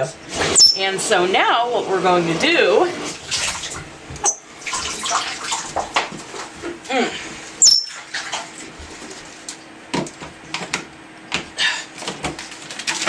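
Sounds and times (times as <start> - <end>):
water draining from a sink: 2.9 - 6.6.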